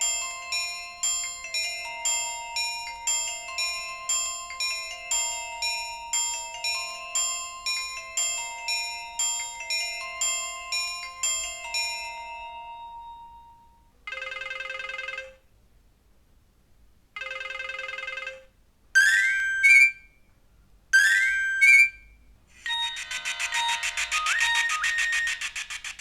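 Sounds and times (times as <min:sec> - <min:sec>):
clock alert chime: 0:22.7 - 0:25.5
message alert tune: 0:22.7 - 0:25.6
quick rising chirp alert: 0:22.7 - 0:25.7.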